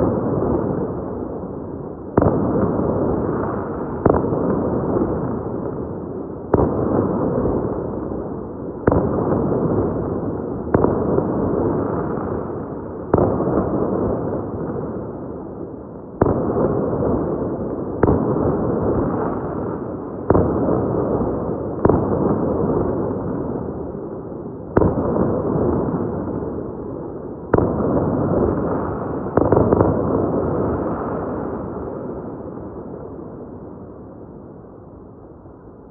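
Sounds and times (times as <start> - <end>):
fireworks bangs with rumble: 2.2 - 5.9, 6.5 - 8.2, 8.8 - 15.2, 16.2 - 23.9, 24.7 - 26.8, 27.5 - 33.0.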